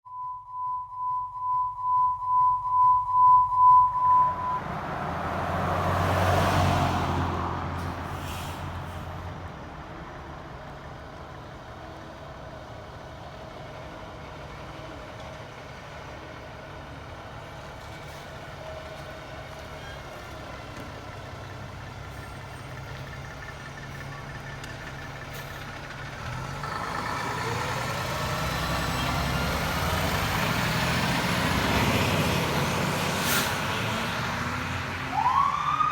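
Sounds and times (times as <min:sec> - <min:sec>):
fire engine motor running: 0:07.6 - 0:35.9.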